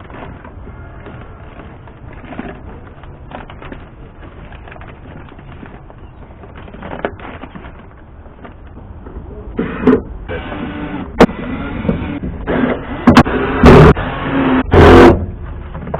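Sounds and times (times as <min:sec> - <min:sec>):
plastic sheet crinkling: 0:00.0 - 0:08.8.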